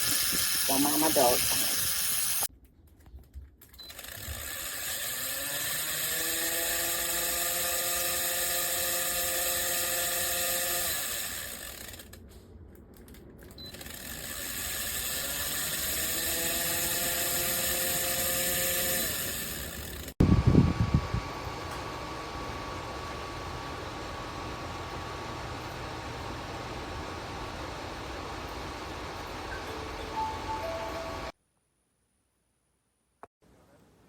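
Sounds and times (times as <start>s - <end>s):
fan motor whine: 0.0s - 2.5s, 13.6s - 31.3s.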